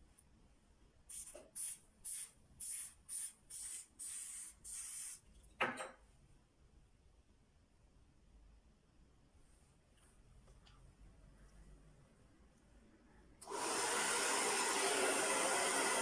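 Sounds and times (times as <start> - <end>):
hair spray bursts hissing: 1.1 - 5.2.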